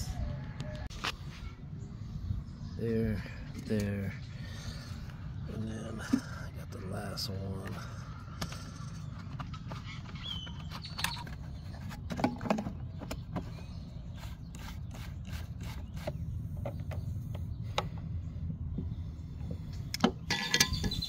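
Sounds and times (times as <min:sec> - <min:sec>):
steady low hum: 0:11.2 - 0:21.0.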